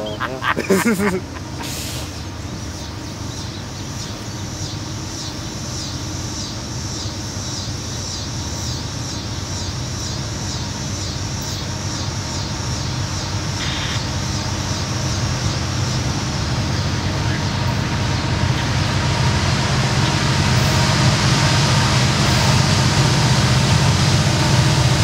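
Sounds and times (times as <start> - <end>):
train rumble: 0.0 - 25.0
brief hiss: 1.6 - 2.2.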